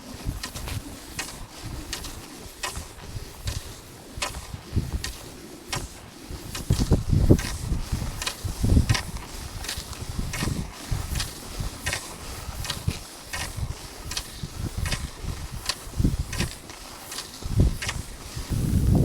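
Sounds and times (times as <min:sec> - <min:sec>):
crunching strides in snow: 0:00.0 - 0:19.0
wind buffeting microphone: 0:02.8 - 0:05.2, 0:05.8 - 0:16.7, 0:17.3 - 0:19.0.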